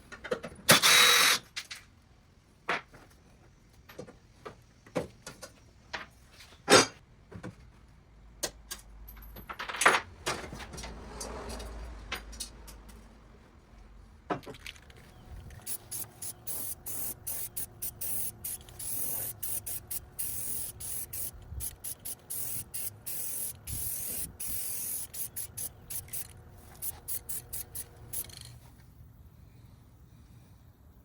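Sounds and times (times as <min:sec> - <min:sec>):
pressurised spray hissing: 0:15.5 - 0:28.5.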